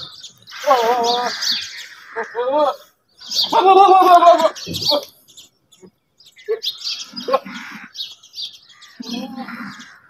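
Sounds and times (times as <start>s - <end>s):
birds chirping: 0.0s - 10.0s
goat bleating: 0.6s - 1.5s, 2.2s - 5.1s, 9.0s - 9.8s.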